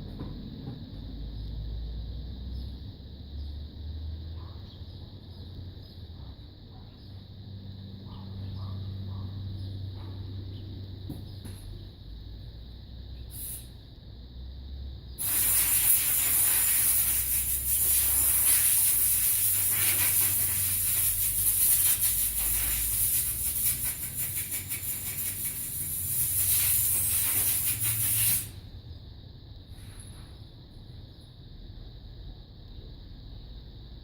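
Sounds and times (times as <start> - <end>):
compressed air hissing: 13.2 - 13.8, 15.2 - 28.7.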